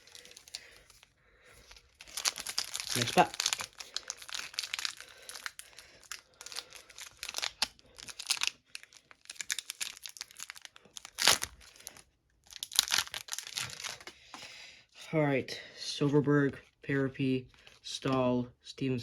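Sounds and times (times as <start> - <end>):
foil wrapper tearing and crinkling: 0.0 - 14.1.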